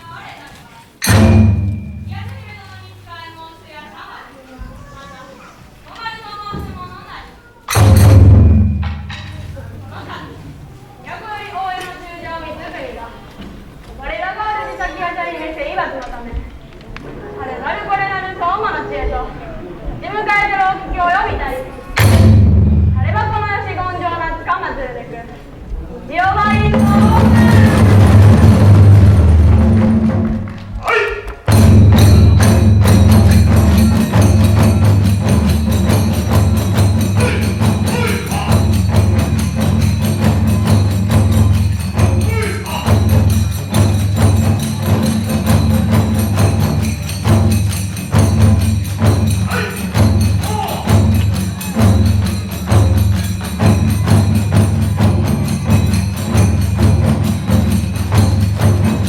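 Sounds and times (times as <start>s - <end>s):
hand cymbals: 1.0s - 3.0s, 7.7s - 10.1s, 22.0s - 23.7s, 26.3s - 29.2s, 30.9s - 59.0s
taiko drums: 1.0s - 3.3s, 7.7s - 10.7s, 19.9s - 24.5s, 25.8s - 59.0s.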